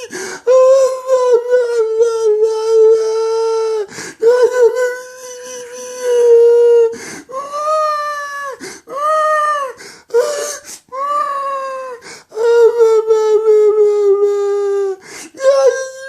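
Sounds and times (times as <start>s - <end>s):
man wailing like a baby: 0.0s - 16.0s
gasping breath: 0.1s - 0.5s, 3.9s - 4.2s, 7.0s - 7.3s, 9.8s - 10.9s, 15.0s - 15.4s.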